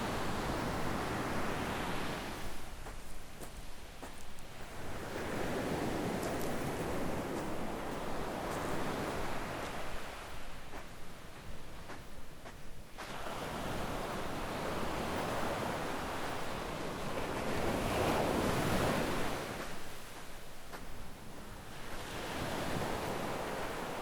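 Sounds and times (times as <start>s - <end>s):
small waves breaking on shore: 0.0s - 12.1s, 12.9s - 24.0s.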